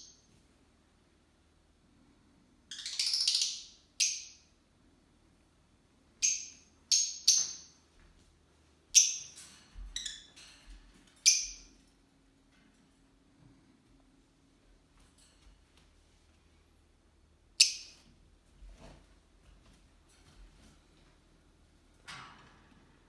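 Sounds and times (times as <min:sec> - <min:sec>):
lovebird chirping: 0:02.7 - 0:04.5, 0:11.2 - 0:11.7.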